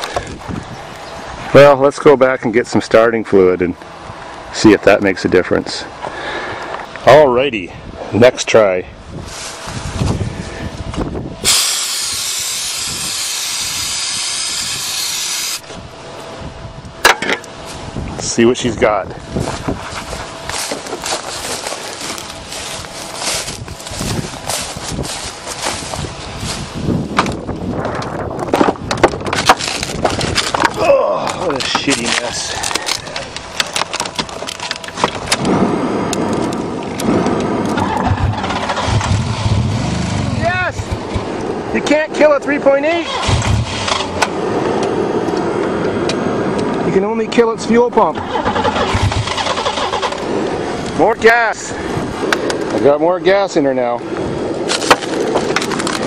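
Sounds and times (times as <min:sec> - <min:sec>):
aerosol can spraying hiss: 0:11.4 - 0:15.6
car engine cranking and starting: 0:37.0 - 0:40.2, 0:42.9 - 0:44.4, 0:48.0 - 0:51.0.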